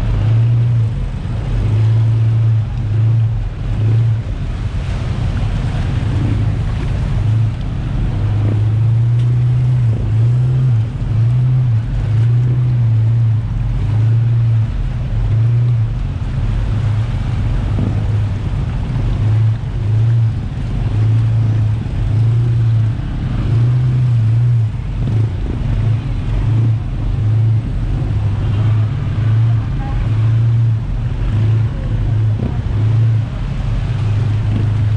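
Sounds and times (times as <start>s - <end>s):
heavy low rumble: 0.0s - 34.9s
jet ski engine and water: 0.0s - 34.9s.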